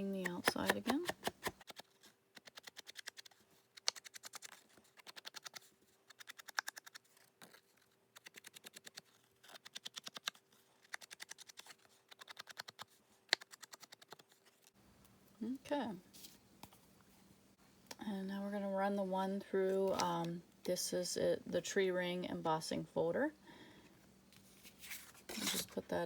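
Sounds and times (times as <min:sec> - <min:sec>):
sponge dauber tapping: 0:00.0 - 0:01.5.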